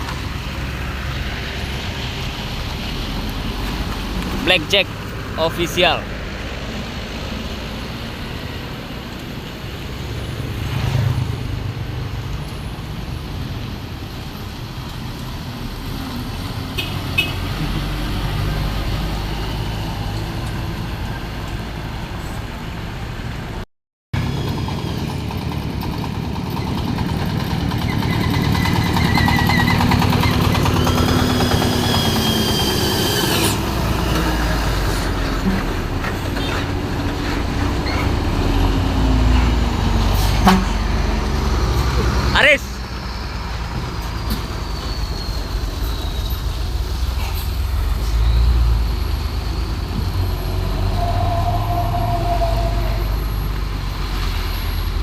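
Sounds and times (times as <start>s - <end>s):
trucks rumbling past: 0.0s - 23.6s, 24.2s - 55.0s
high whining tone: 49.3s - 53.6s.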